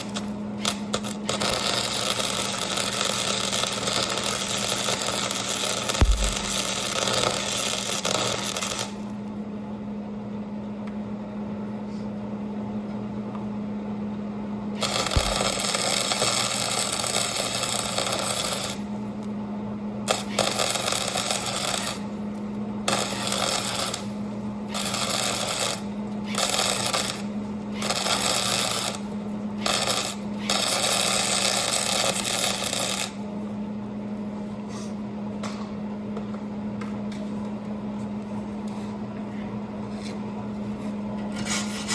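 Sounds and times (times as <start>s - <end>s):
welding arc crackling: 0.0s - 9.3s, 14.8s - 19.3s, 20.1s - 33.3s
electrical hum: 0.0s - 41.9s.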